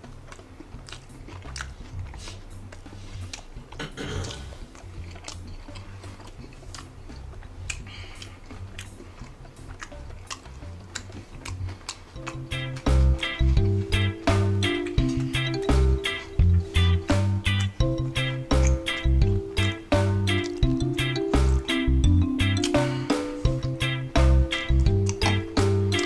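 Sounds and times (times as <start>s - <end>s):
wet mouth clicks and smacks: 0.0s - 4.0s, 4.6s - 13.5s, 14.3s - 17.8s, 24.6s - 26.0s
person biting and chewing: 0.0s - 13.6s
quiet background music: 0.0s - 26.0s.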